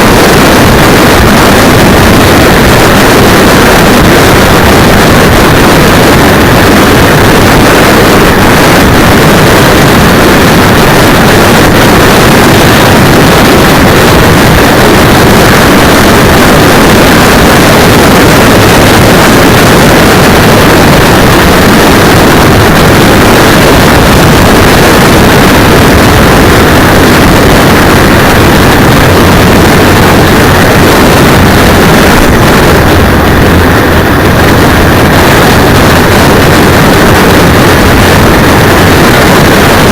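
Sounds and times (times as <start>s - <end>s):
motorcycle engine: 0.0s - 39.9s
road noise: 0.0s - 39.9s
wind rush: 0.0s - 39.9s.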